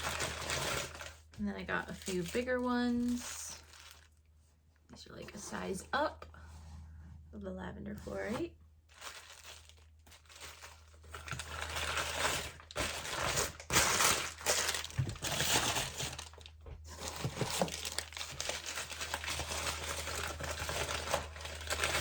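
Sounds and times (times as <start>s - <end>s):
packaging crinkling: 0.0s - 4.2s, 8.9s - 22.0s.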